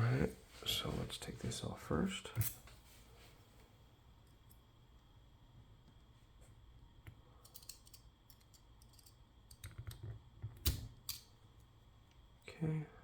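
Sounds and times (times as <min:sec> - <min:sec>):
padlock parts clicking: 0:07.4 - 0:10.0.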